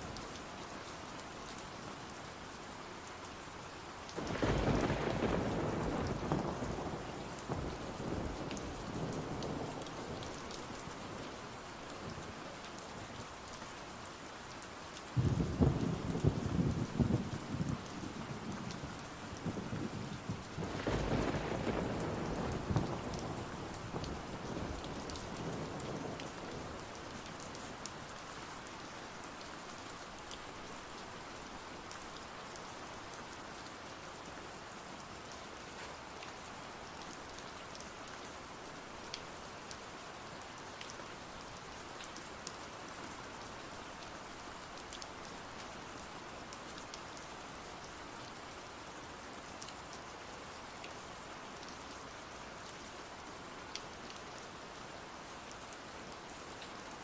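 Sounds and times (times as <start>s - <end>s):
steady rain: 0.0s - 57.0s
thunder rumble: 4.2s - 7.0s, 15.2s - 18.4s, 19.4s - 26.2s.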